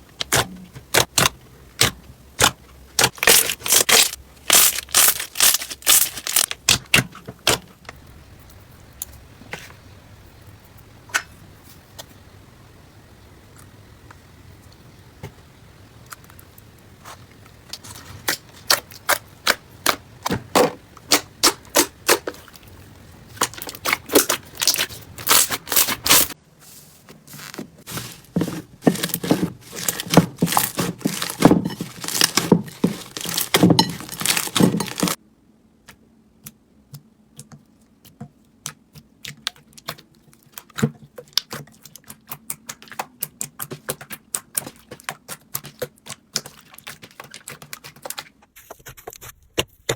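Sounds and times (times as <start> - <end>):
slime crackling and popping: 0.3 - 6.7, 23.4 - 26.4, 29.0 - 35.2.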